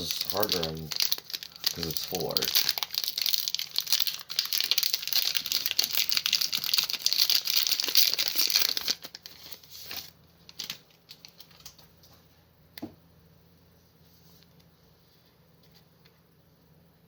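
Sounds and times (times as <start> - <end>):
foil wrapper crinkling: 0.0 - 11.9.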